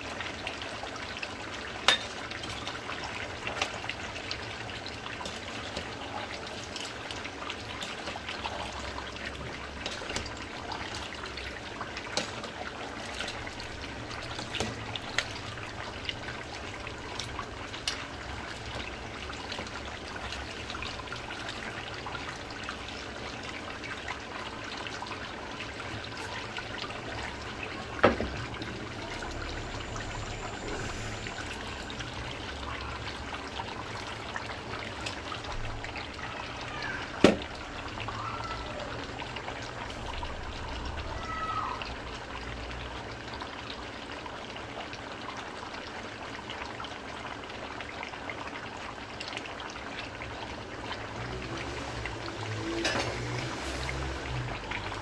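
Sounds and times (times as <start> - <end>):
meat sizzling and bubbling in a pot: 0.0 - 55.0.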